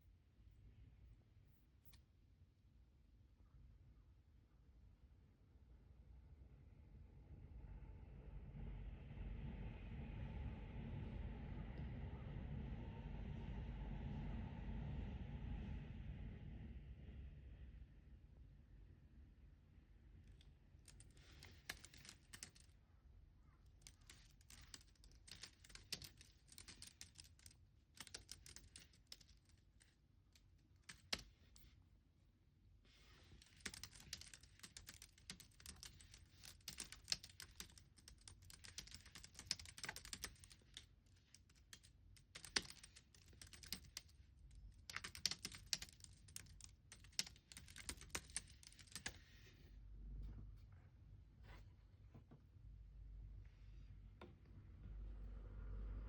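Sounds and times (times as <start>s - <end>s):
typing on computer keyboard: 20.9s - 22.7s, 23.8s - 29.9s, 30.8s - 31.6s, 33.3s - 49.2s.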